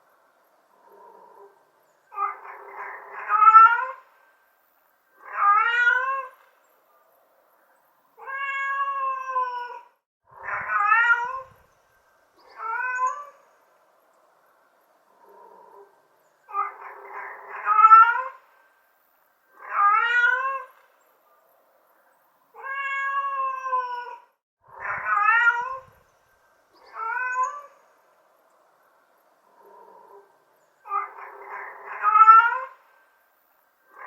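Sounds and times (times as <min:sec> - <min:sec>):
cat meowing: 0:02.1 - 0:04.0, 0:05.2 - 0:06.4, 0:08.2 - 0:11.6, 0:12.5 - 0:13.4, 0:16.5 - 0:18.4, 0:19.6 - 0:20.8, 0:22.6 - 0:26.0, 0:26.8 - 0:27.7, 0:30.9 - 0:32.8.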